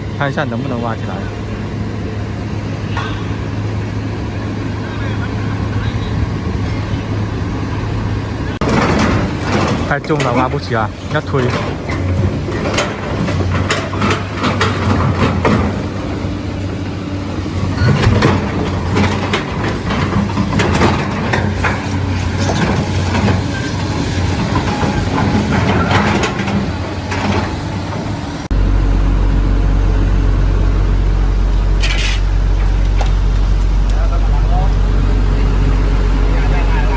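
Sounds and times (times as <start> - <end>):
excavator engine under load: 0.0 - 36.9
steady low drone: 28.4 - 36.9.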